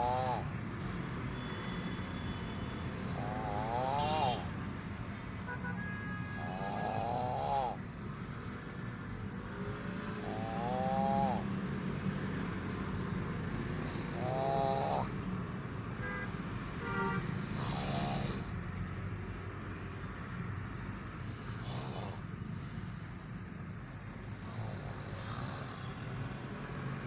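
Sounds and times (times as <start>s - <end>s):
person snoring heavily: 0.0s - 0.7s, 3.0s - 4.6s, 6.2s - 8.6s, 9.4s - 11.6s, 13.5s - 16.0s, 17.4s - 18.8s, 21.2s - 23.4s, 24.2s - 27.0s
low hum of traffic: 0.0s - 27.0s.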